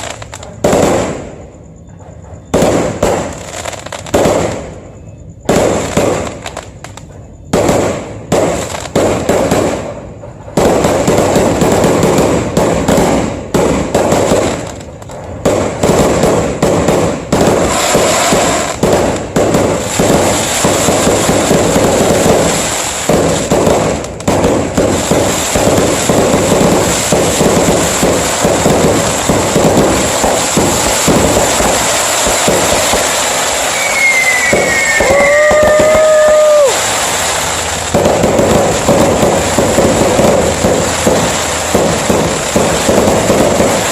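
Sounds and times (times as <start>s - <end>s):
falling firework whistle: 0.0s - 13.2s, 16.8s - 43.9s
fireworks bangs and crackling: 0.0s - 43.9s.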